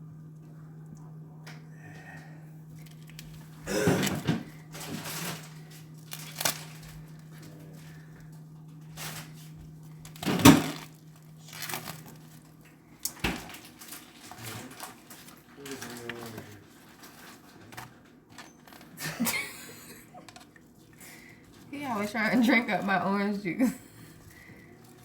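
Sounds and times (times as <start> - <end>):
steady low hum: 0.0 - 25.0
kitchen rustling and clattering: 2.8 - 25.0.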